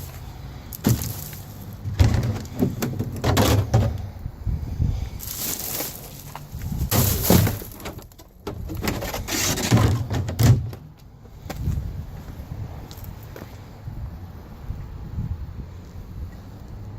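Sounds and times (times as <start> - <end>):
debris scraping and rustling: 0.0 - 4.0, 5.2 - 10.6
dull thumps: 0.8 - 4.0.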